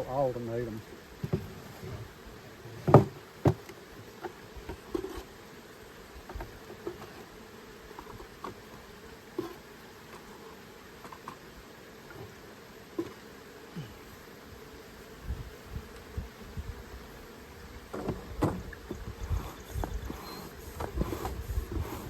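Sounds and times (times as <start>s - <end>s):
honey bees buzzing: 0.0s - 22.0s
wooden hive frames knocking: 2.8s - 3.7s, 17.9s - 22.0s.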